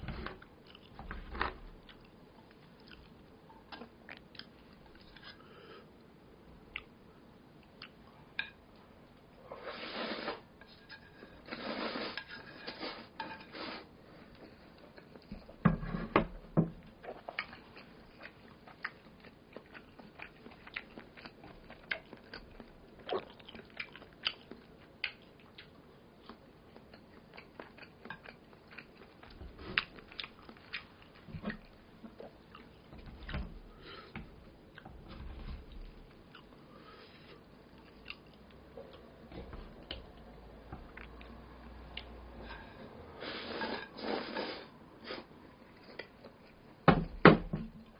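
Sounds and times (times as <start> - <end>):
chewing noodles: 17.0 - 32.9.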